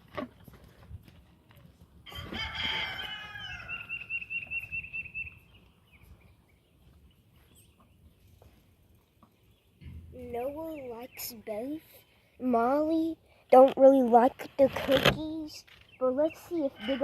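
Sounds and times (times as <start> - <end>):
farm animal call: 2.1 - 5.4.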